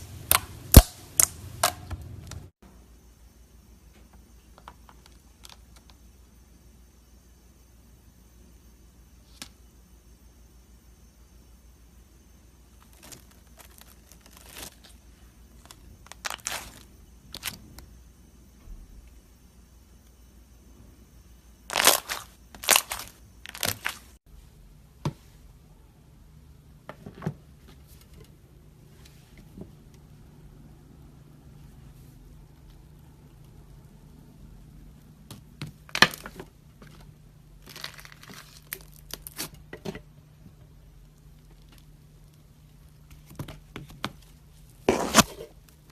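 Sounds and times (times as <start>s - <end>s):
slime crackling and popping: 16.1s - 16.8s, 21.7s - 24.1s, 37.6s - 39.6s.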